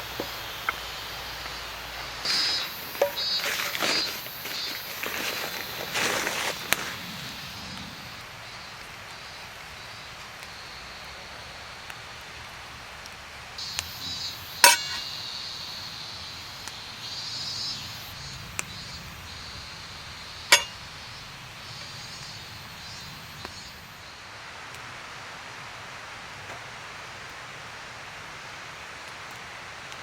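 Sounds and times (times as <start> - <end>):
outdoor hiss: 0.0 - 30.0
ringing metal clinks: 14.6 - 15.1, 20.5 - 20.8.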